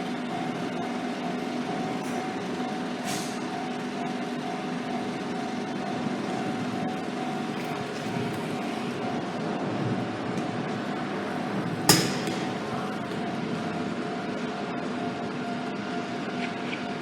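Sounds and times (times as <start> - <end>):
vehicle engine humming: 6.2 - 14.0.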